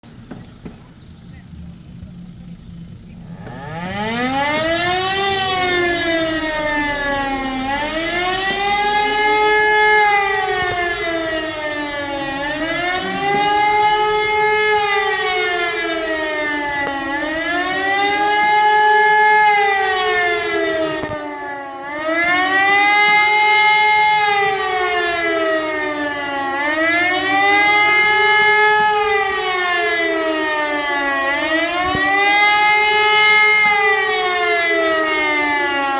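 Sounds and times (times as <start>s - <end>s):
warning siren wailing: 1.4s - 35.9s.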